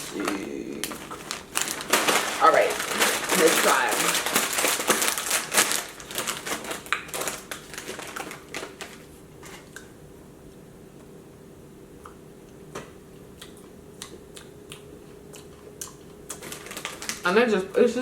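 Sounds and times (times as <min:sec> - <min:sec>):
snack bag rustling: 0:00.0 - 0:09.9, 0:15.4 - 0:17.7
popcorn crunching: 0:00.0 - 0:10.0, 0:12.0 - 0:18.0.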